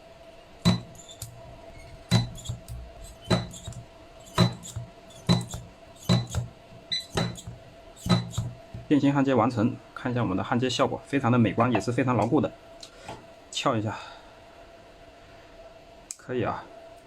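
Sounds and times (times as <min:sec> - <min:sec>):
faint steady hum: 0:00.0 - 0:17.0
spot welder cracking: 0:00.6 - 0:08.9.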